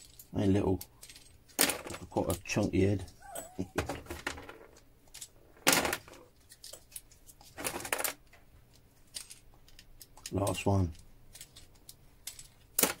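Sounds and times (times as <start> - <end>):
parts clattering: 0.0 - 13.0
relay parts clicking and clinking: 0.0 - 13.0.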